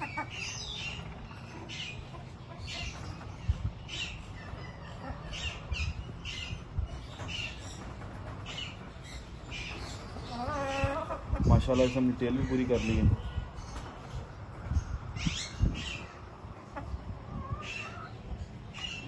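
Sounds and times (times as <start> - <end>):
bird calling: 0.0 - 13.8.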